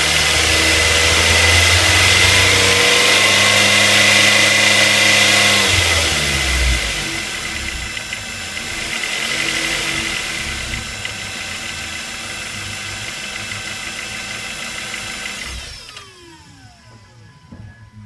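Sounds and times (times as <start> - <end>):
engine knocking: 0.0 - 16.0
car engine running: 0.0 - 18.0.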